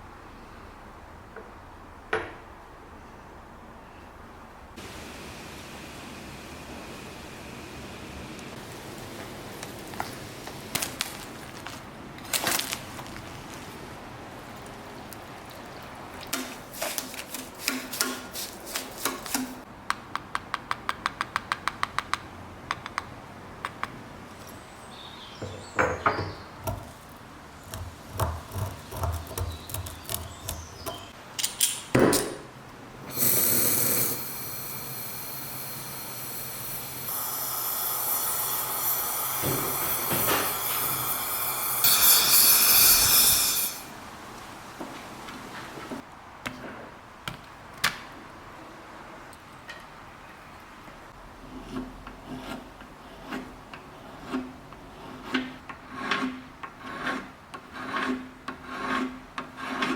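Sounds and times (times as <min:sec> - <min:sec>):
steady hiss: 0:04.8 - 0:19.7, 0:32.9 - 0:46.0.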